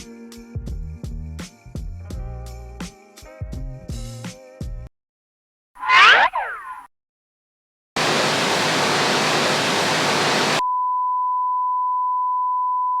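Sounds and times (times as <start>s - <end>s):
white noise burst: 8.0s - 10.6s.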